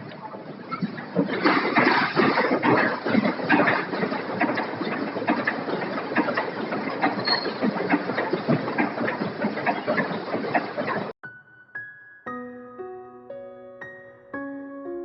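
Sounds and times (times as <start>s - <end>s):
factory machinery clicking and clacking: 0.0s - 11.2s.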